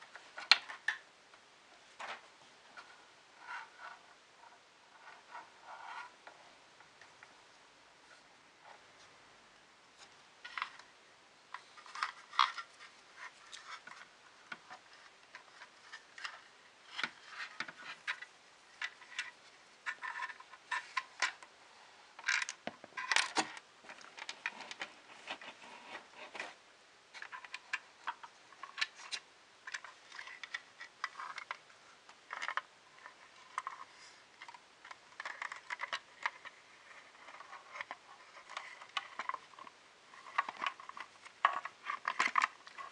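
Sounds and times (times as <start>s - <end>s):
hands handling small parts: 22.2s - 26.6s, 27.2s - 42.9s.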